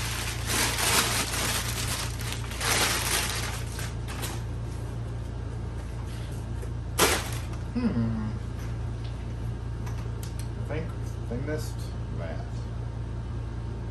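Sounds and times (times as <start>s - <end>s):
paper and cardboard rustling: 0.0s - 4.5s, 7.0s - 7.6s
low electrical hum: 0.0s - 13.9s.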